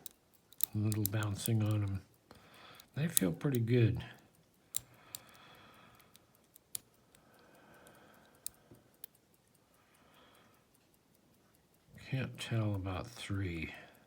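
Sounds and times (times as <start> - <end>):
lock pick clicking in lock: 0.0 - 1.8.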